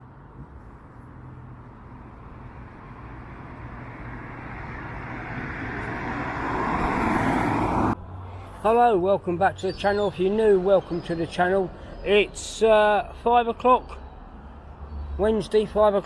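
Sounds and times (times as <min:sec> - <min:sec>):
vehicle engine approaching: 0:00.0 - 0:11.8
street traffic: 0:00.0 - 0:16.0.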